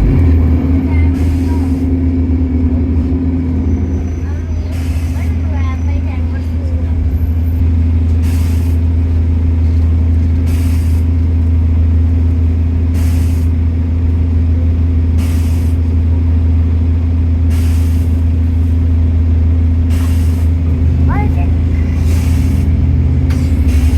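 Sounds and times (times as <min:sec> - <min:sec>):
bus engine drone: 0:00.0 - 0:23.9
air hiss: 0:08.2 - 0:08.8, 0:10.4 - 0:11.1, 0:12.9 - 0:13.5, 0:15.2 - 0:15.9, 0:17.5 - 0:18.2, 0:19.9 - 0:20.6, 0:21.9 - 0:23.9.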